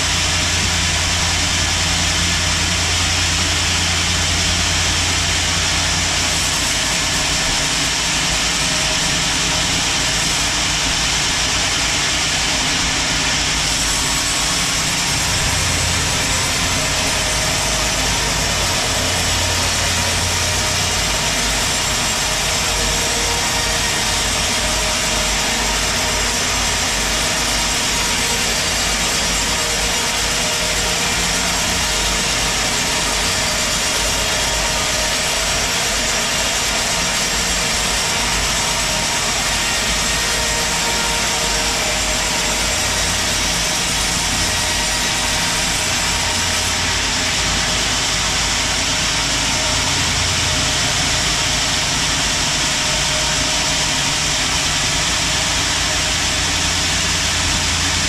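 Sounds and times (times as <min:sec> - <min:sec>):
sawmill sawing a log: 0:00.0 - 0:58.0.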